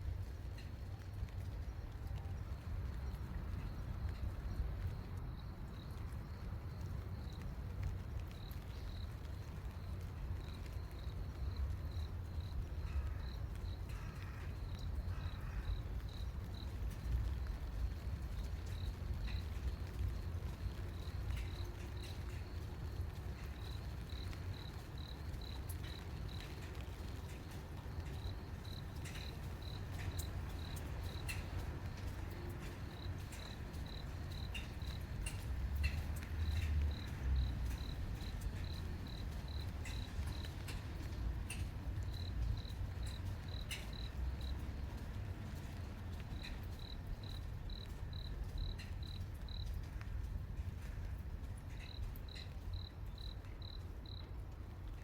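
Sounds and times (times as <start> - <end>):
cricket chirping: 2.5 - 50.9, 51.6 - 54.4.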